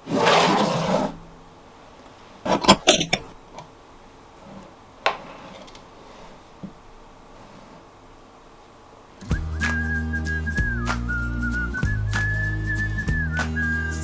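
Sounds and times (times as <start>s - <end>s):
rustling: 0.0s - 3.7s, 4.3s - 8.1s
tableware clinking: 2.6s - 3.3s.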